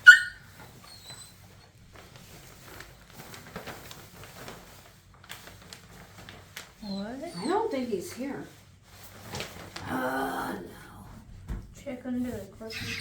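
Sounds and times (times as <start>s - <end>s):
faint rustling: 0.0s - 10.2s.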